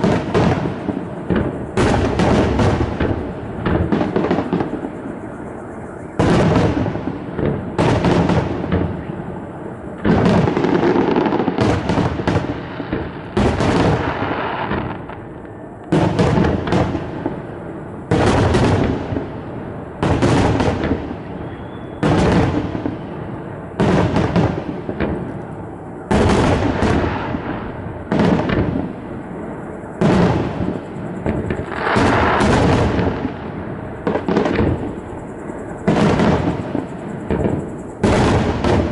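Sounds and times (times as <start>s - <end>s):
firework shells bursting: 30.0s - 33.3s.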